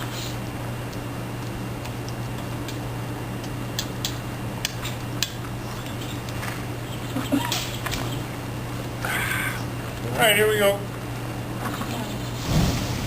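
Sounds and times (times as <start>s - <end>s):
wood fire crackling: 0.0s - 6.8s, 12.4s - 13.0s
steady low hum: 0.0s - 13.0s.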